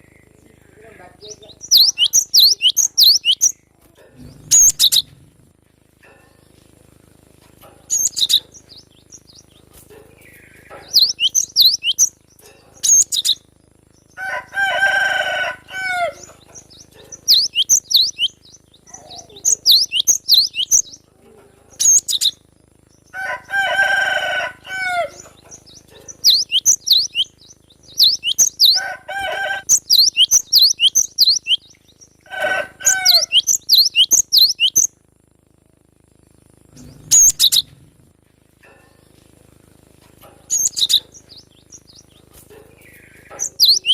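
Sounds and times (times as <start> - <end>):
longer lower layered bird call: 1.3 - 3.7, 10.2 - 21.0, 24.6 - 35.0, 40.5 - 43.9.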